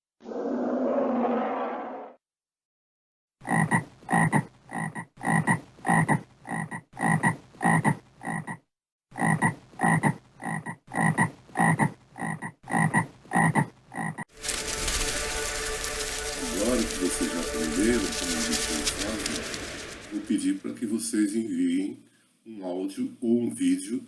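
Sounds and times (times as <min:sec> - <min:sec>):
frog croaking: 0:03.4 - 0:14.2.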